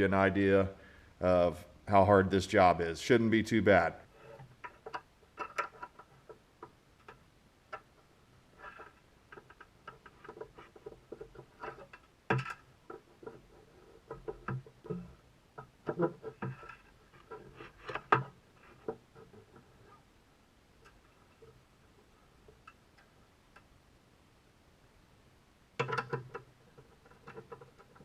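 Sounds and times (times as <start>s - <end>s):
objects clicking and knocking: 4.3s - 8.0s, 8.6s - 19.9s, 25.8s - 28.0s.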